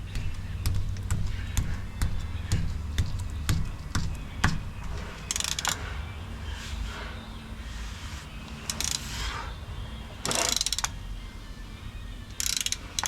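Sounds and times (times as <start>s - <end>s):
music with drum beat: 0.0s - 5.0s
quick clicking rattle: 5.3s - 5.8s.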